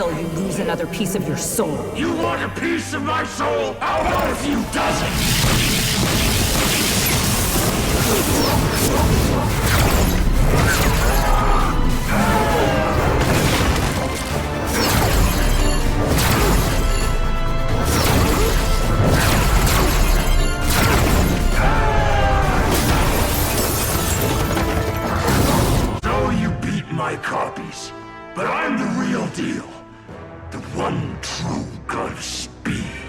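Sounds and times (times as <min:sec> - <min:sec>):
action film music: 0:00.0 - 0:33.0
fight impacts and crashes: 0:05.0 - 0:17.1, 0:17.8 - 0:26.0.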